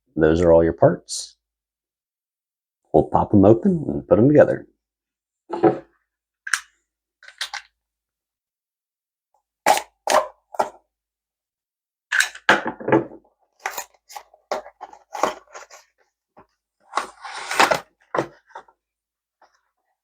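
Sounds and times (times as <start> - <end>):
cardboard packaging rustling: 13.6 - 16.0, 16.8 - 18.7
cardboard tearing: 16.9 - 18.0.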